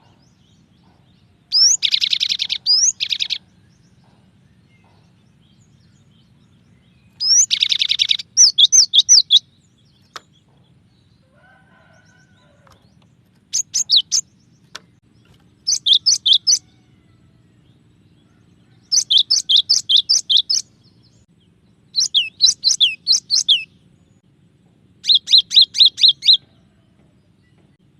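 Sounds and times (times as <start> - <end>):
harsh buzzy bird call: 15.6 - 17.4, 18.2 - 20.7.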